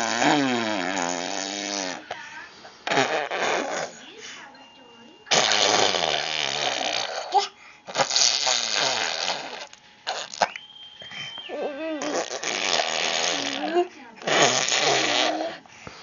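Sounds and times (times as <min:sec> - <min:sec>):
raspberries blown through lips: 0:07.9 - 0:15.6.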